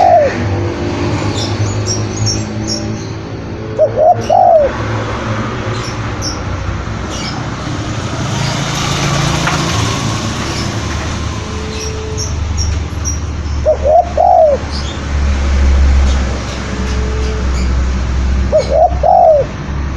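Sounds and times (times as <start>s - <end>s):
dove cooing: 0.0s - 0.5s, 3.4s - 6.4s, 13.0s - 14.9s, 18.5s - 19.6s.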